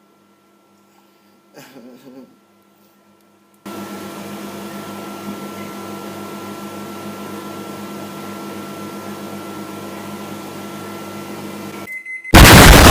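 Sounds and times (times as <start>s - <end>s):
microwave oven humming: 0.0s - 12.9s
faint high whine: 12.4s - 12.9s.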